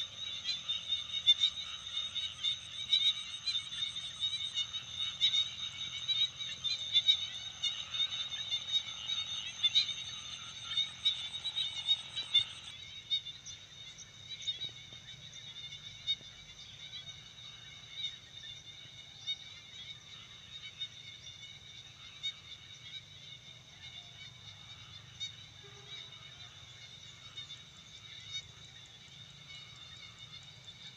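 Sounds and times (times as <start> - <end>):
short frog calls: 0.0 - 18.2
frog chorus trilling: 0.0 - 30.9.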